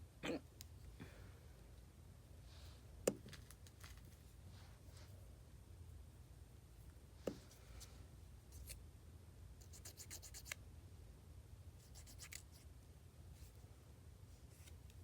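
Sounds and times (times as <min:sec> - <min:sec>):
faint scratching on fingernails: 0:09.6 - 0:10.6, 0:11.8 - 0:12.7.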